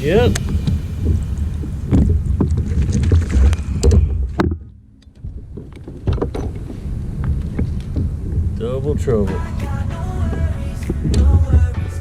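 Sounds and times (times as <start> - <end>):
low water rumble: 0.0 - 12.0
knocks against plastic hull: 1.9 - 8.5.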